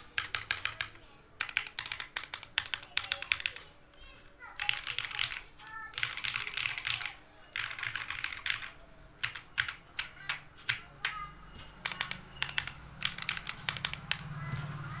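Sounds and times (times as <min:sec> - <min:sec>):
keyboard typing: 0:00.0 - 0:03.8, 0:04.5 - 0:15.0.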